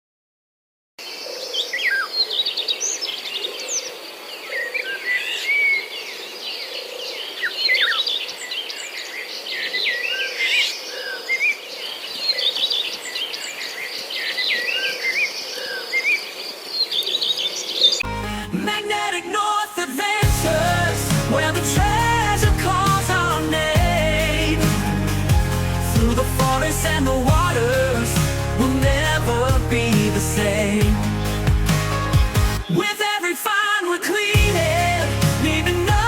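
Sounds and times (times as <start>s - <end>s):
small birds chirping: 20.3s - 33.1s.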